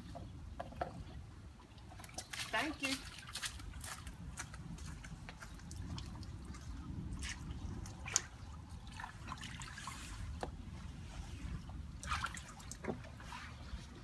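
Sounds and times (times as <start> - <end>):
water trickling and dripping: 0.2 - 14.0
small splashes: 1.6 - 4.5, 5.4 - 10.4, 11.9 - 13.8.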